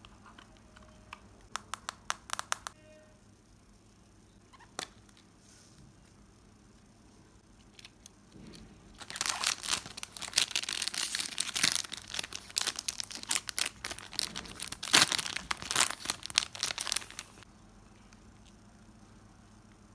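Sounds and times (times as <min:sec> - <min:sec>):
packaging being torn and crinkled: 0:09.0 - 0:17.4.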